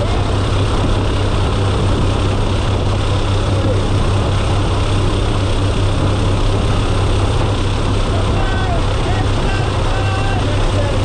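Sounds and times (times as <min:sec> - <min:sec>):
strong low hum: 0:00.0 - 0:11.0
turboprop engines droning: 0:00.0 - 0:11.0.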